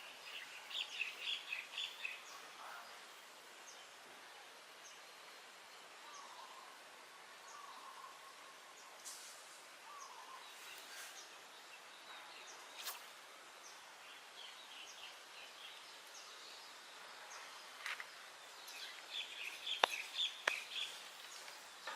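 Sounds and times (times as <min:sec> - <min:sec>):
small birds chirping: 0:00.0 - 0:21.9.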